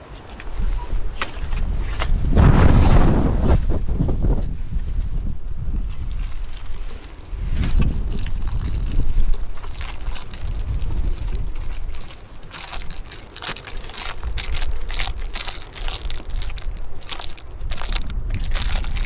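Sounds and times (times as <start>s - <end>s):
wind buffeting microphone: 0.0s - 19.0s
quick crunching clicks: 6.0s - 19.0s.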